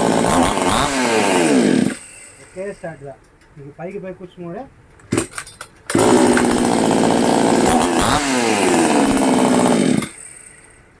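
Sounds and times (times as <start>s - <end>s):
chainsaw engine running: 0.0s - 2.6s, 5.9s - 10.6s.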